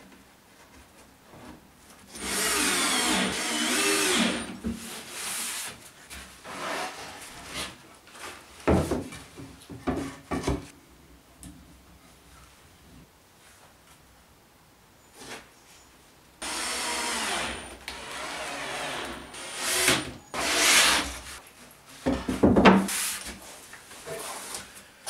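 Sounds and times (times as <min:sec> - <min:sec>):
power drill whining on wood: 0:02.2 - 0:04.5, 0:16.4 - 0:21.2.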